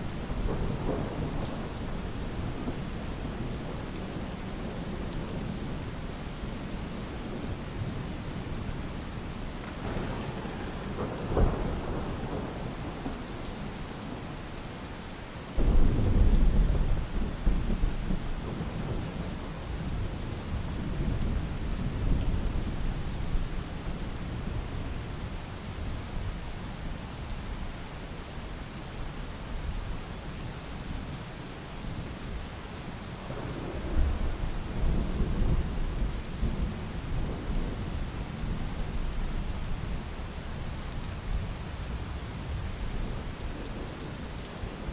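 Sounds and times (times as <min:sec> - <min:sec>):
steady rain falling: 0:00.0 - 0:44.9
thunder rolling: 0:00.3 - 0:02.8, 0:09.6 - 0:13.2, 0:15.6 - 0:18.9.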